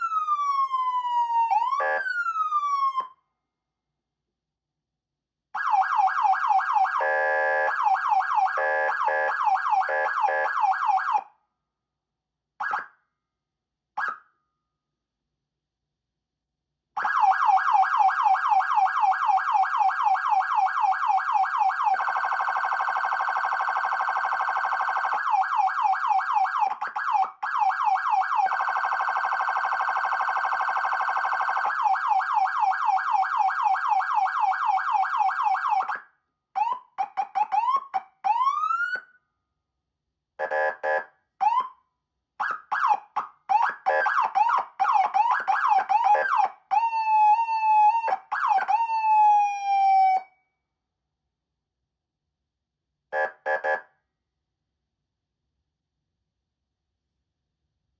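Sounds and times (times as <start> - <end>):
siren rising whoops: 0.0 - 3.0, 45.0 - 50.3
electronic siren yelp: 0.0 - 3.2, 5.6 - 11.2, 12.6 - 12.9, 14.0 - 14.2, 17.0 - 36.0, 42.4 - 50.4, 53.2 - 53.8
harsh horn-like siren buzz: 1.8 - 2.2, 7.0 - 10.6, 40.4 - 41.0, 53.2 - 53.8.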